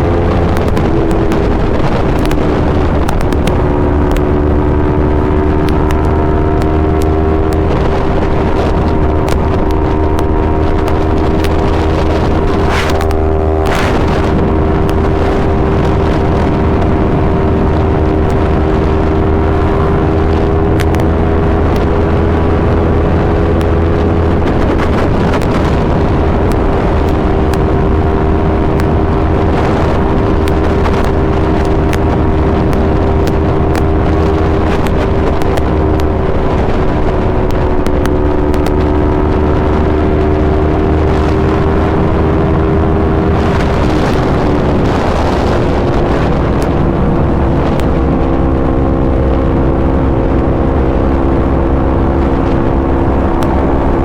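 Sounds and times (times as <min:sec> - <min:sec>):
low rushing noise: 0:00.0 - 0:54.0
motorcycle engine at high revs: 0:00.0 - 0:54.0.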